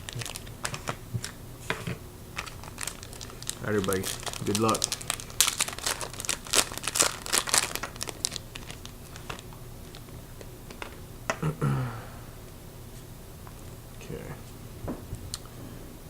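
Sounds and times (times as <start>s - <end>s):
wrapper tearing and crinkling: 0.0s - 1.4s, 2.3s - 10.1s.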